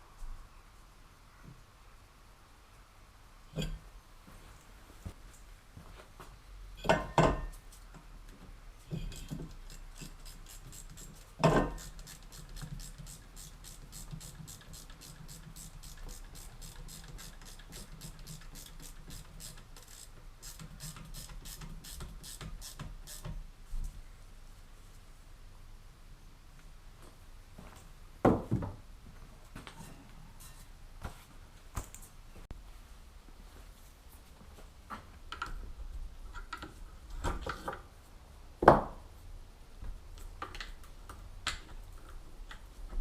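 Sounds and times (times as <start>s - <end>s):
ratchet sharp clicks: 9.6s - 23.2s.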